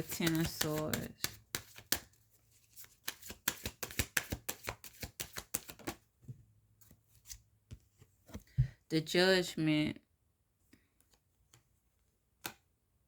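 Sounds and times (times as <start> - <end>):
soft card taps: 0.0 - 2.1
cards shuffling with flicks: 0.0 - 6.0, 12.4 - 12.7.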